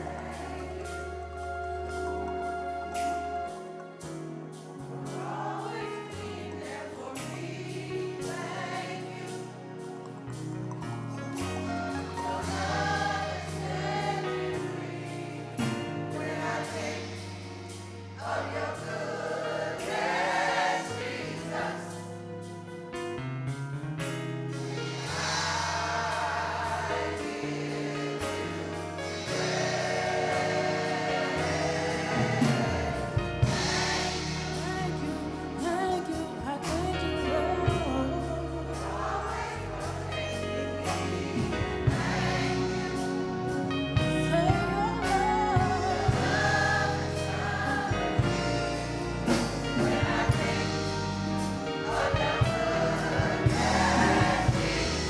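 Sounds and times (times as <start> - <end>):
choir singing gospel song: 0.0 - 23.2, 24.1 - 55.0
instrumental accompaniment with bass: 0.0 - 55.0
beat: 37.7 - 55.0.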